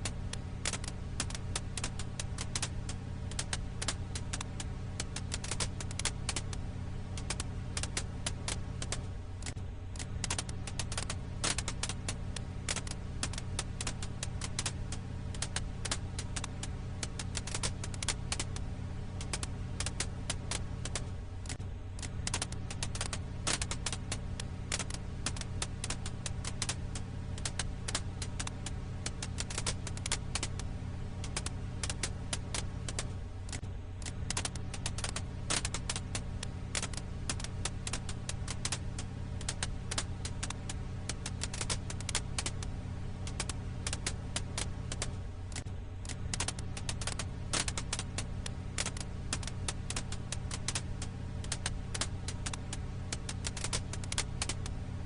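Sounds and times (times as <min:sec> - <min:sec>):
campfire wood crackling: 0:00.0 - 0:55.0
steady low hum: 0:00.0 - 0:55.0.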